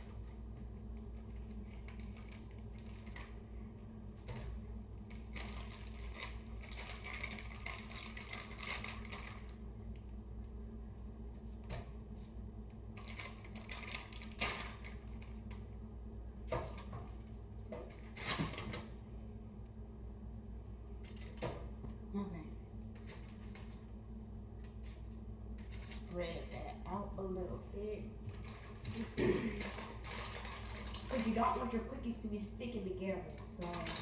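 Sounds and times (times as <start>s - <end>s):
steady low hum: 0.0s - 34.0s
aluminum foil crinkling: 5.1s - 9.6s, 13.0s - 15.5s, 28.3s - 32.0s.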